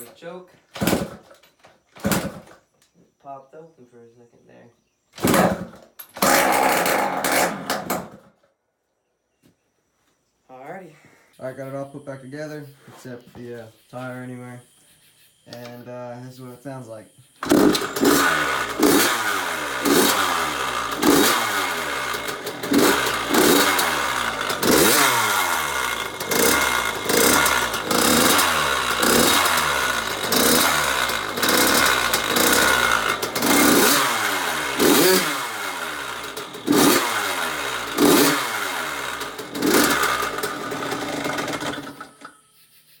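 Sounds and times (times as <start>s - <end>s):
two-stroke engine revving: 5.2s - 8.2s, 17.2s - 42.3s.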